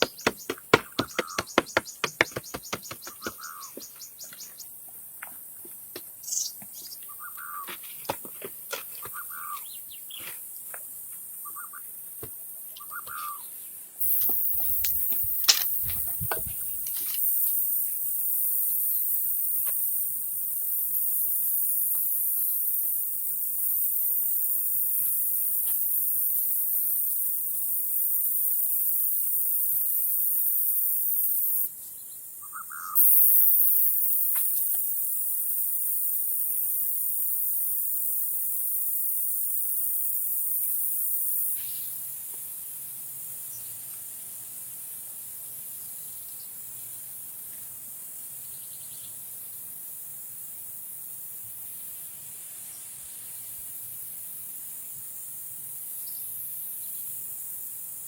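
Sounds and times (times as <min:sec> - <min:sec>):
knocks: 0:00.0 - 0:03.9
birds chirping: 0:00.0 - 0:04.8, 0:06.2 - 0:07.7
high-pitched hiss: 0:00.0 - 0:07.1, 0:12.0 - 0:32.3, 0:33.0 - 0:58.0.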